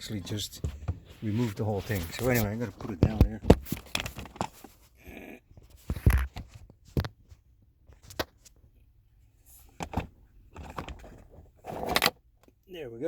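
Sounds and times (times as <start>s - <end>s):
light rustling: 0.3s - 4.8s.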